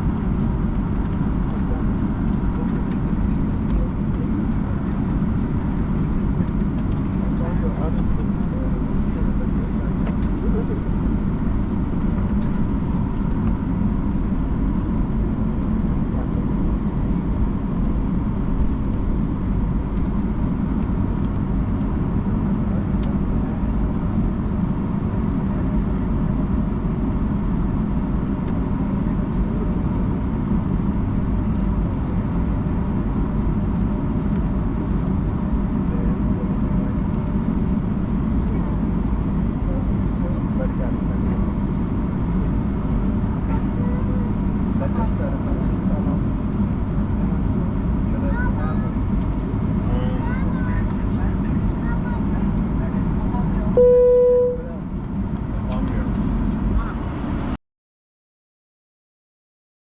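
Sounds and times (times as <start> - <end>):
aircraft cabin rumble: 0.0 - 57.6
faint steady whine: 53.5 - 54.8.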